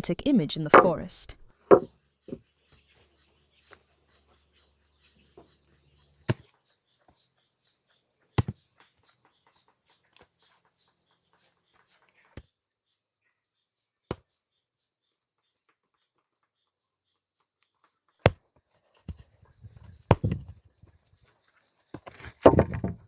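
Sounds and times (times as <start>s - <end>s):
wooden knocks on timber: 20.1s - 20.6s, 22.0s - 23.0s.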